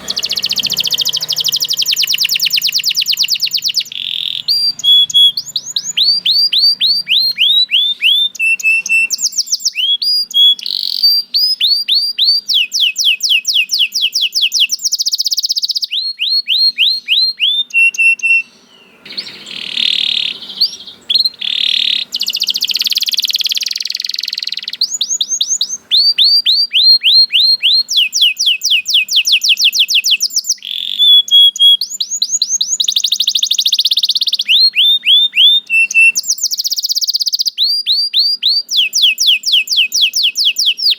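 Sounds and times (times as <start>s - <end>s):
canary singing rapid trills: 0.0s - 40.9s.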